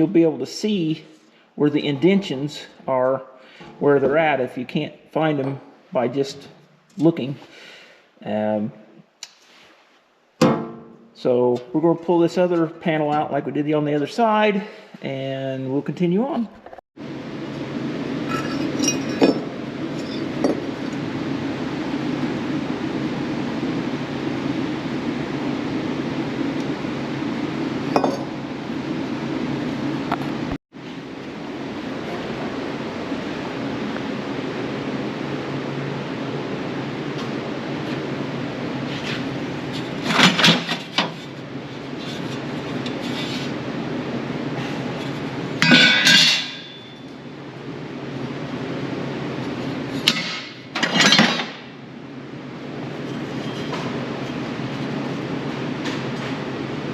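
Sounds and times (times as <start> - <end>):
steady hum: 0.0 - 16.4, 17.0 - 56.9
sheet metal clinking: 45.6 - 47.0
metal clang ringing: 45.6 - 47.1.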